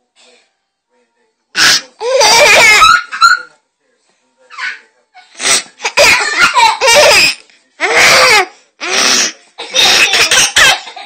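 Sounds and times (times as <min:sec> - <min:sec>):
girl laughing: 0:06.0 - 0:07.2.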